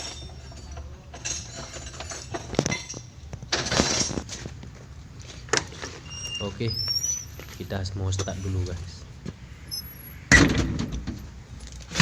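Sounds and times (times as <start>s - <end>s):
metal tools clinking: 0.0s - 4.6s, 5.5s - 9.1s
metal rattle: 0.0s - 4.7s
low steady hum: 0.0s - 11.9s.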